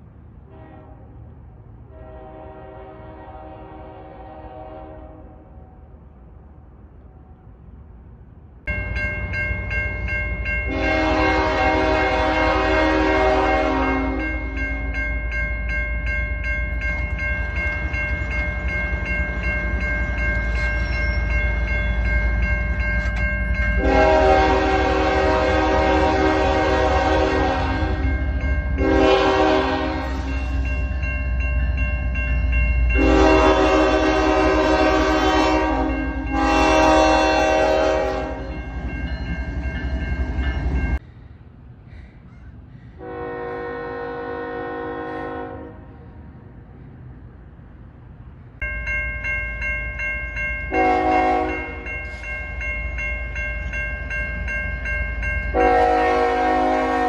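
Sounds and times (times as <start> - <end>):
train rumble: 0.0 - 57.0
locomotive air horn: 0.5 - 1.2, 1.9 - 5.5, 10.7 - 14.8, 23.8 - 28.2, 28.8 - 30.6, 33.0 - 38.6, 43.0 - 46.0, 50.7 - 51.9, 55.5 - 57.0.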